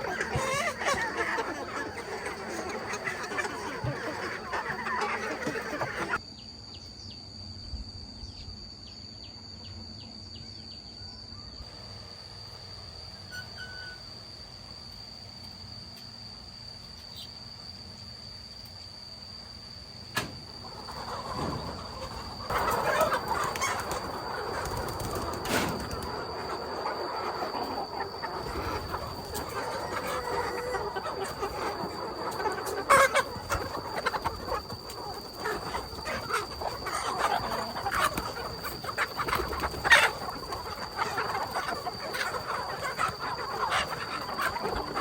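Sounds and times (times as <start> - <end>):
chickens clucking and chirping: 0.0 - 7.2, 19.5 - 45.0.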